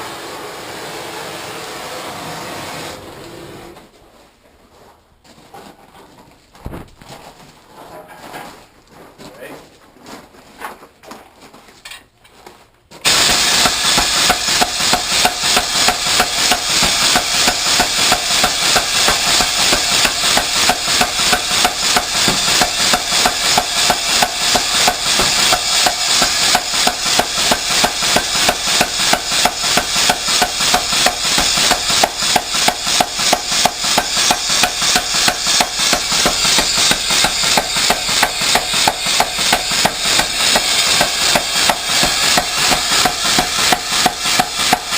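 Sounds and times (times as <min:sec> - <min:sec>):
pneumatic air hammer striking: 0:13.0 - 0:44.9.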